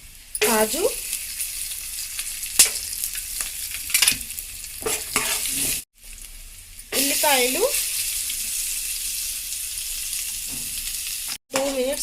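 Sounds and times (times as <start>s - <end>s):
nuts sizzling in oil: 0.1s - 12.0s
spoon stirring and scraping: 4.8s - 5.8s.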